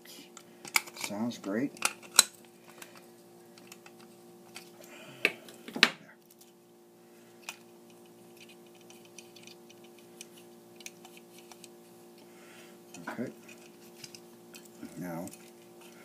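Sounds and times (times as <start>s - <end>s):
faint steady hum: 0.0s - 16.0s
small parts and tools clicking: 0.4s - 3.0s, 3.6s - 4.7s, 7.4s - 12.3s.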